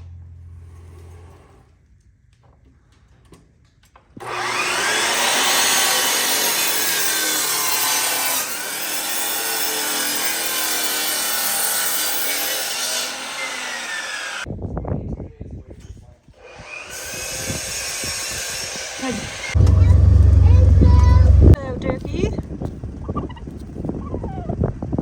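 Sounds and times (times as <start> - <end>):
electric power saw cutting: 4.2 - 14.5, 16.4 - 21.6.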